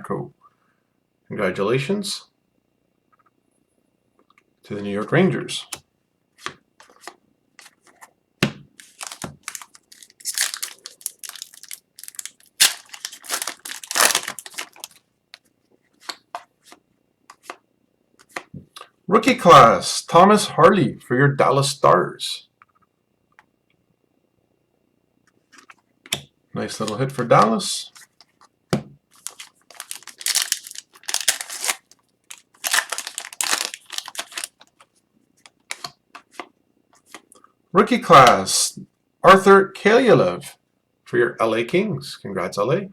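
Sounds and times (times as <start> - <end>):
cards being handled: 6.4 - 8.1, 8.8 - 17.6, 29.2 - 37.3
foil wrappers tearing and crinkling: 8.8 - 15.0, 29.2 - 34.8.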